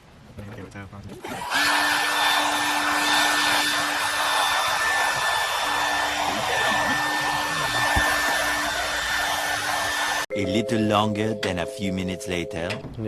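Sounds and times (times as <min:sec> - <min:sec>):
heat gun blowing: 0:01.2 - 0:10.3.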